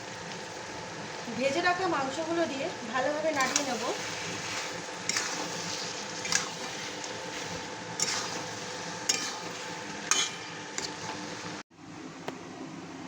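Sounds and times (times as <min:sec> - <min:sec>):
frying sizzle: 0:00.0 - 0:11.6
utensil scraping and clinking pan: 0:03.4 - 0:11.2.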